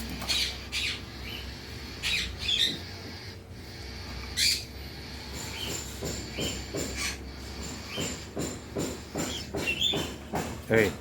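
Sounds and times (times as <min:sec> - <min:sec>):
parrot squawking: 0:00.2 - 0:08.2.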